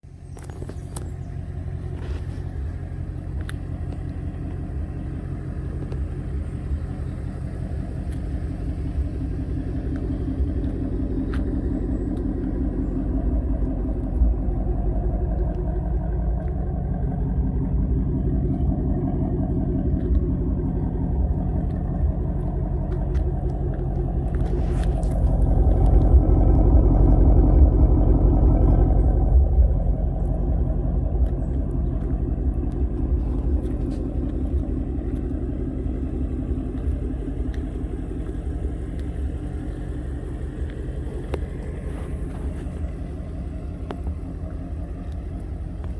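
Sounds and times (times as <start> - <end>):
car engine rumbling: 0.0 - 45.9.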